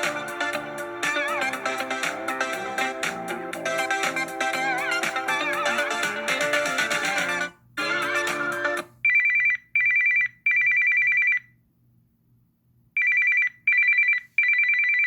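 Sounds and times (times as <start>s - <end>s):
guitar ringtone: 7.8s - 11.4s
trilling telephone bell ringtone: 9.1s - 11.5s, 13.0s - 15.0s.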